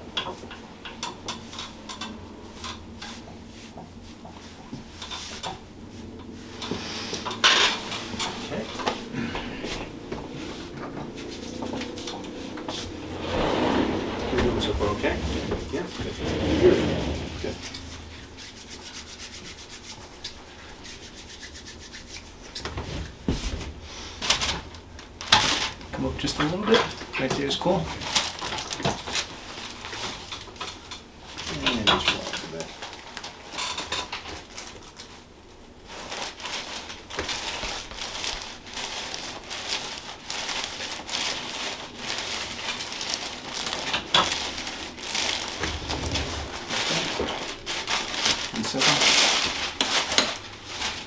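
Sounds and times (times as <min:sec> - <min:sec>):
soft rhythmic rubbing strokes: 0:01.2 - 0:24.2.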